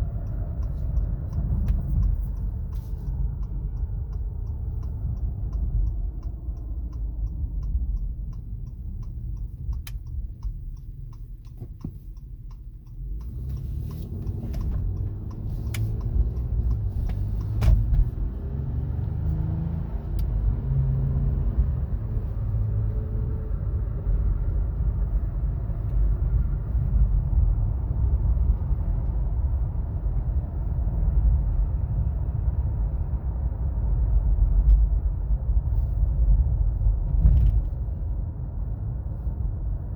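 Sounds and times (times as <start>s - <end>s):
road rumble: 0.0s - 39.9s
road speed whine: 12.8s - 39.9s
car accelerating: 13.0s - 27.2s.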